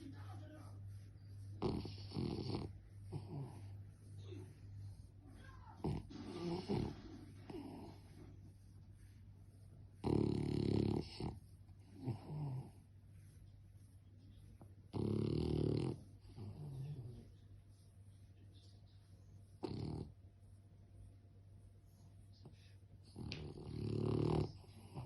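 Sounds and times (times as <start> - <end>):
soft dog breaths: 0.0 - 25.0
dog snoring: 1.4 - 3.8, 5.8 - 8.3, 10.0 - 12.9, 14.9 - 17.2, 19.6 - 20.2, 23.0 - 25.0.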